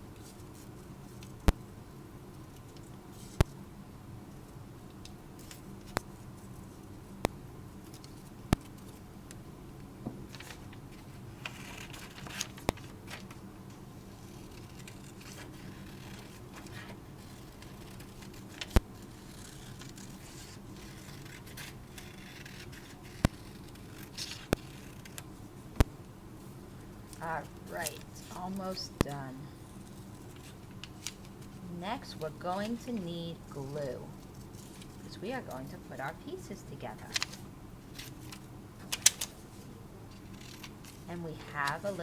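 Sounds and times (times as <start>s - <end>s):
faint paper rustling: 10.1s - 25.7s, 26.4s - 42.0s
scissors snipping paper: 14.1s - 25.3s.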